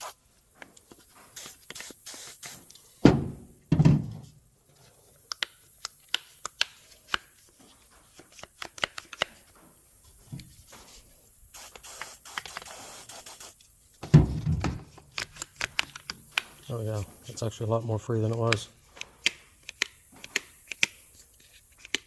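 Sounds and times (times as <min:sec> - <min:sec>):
aerosol can spraying: 0:00.9 - 0:03.4, 0:10.0 - 0:17.5
handling thumps: 0:03.0 - 0:04.3, 0:14.0 - 0:17.2.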